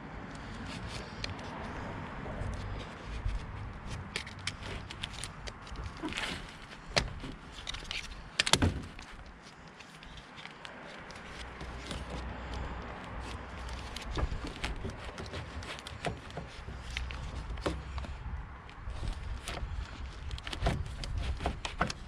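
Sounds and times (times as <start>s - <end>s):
clicks and knocks on car parts: 3.9s - 9.9s, 11.1s - 18.3s, 19.0s - 22.0s.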